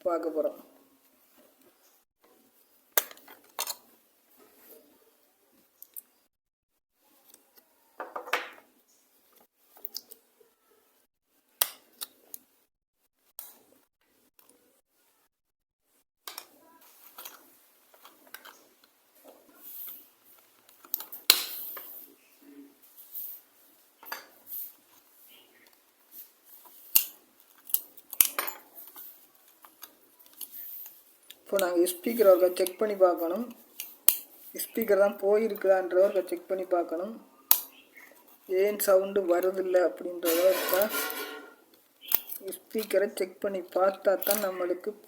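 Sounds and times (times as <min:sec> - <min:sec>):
tools and plastic parts clicking: 0:03.0 - 0:03.9, 0:16.3 - 0:19.0, 0:20.6 - 0:21.5, 0:26.7 - 0:32.8, 0:40.2 - 0:43.1, 0:43.7 - 0:44.8.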